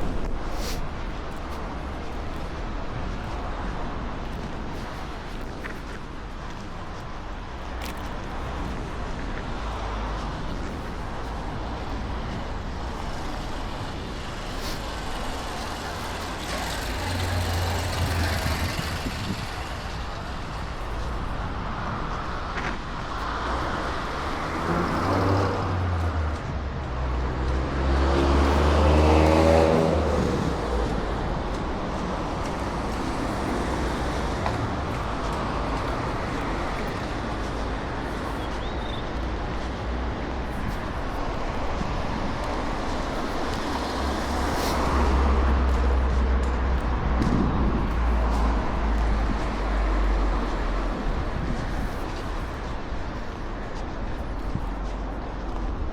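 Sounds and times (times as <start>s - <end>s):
distant traffic: 0.0s - 55.9s
car passing close by: 13.9s - 20.3s, 23.2s - 31.4s.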